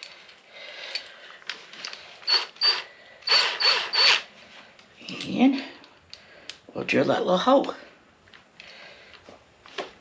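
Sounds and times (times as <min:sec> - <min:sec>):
power drill whirring: 0:02.2 - 0:04.3.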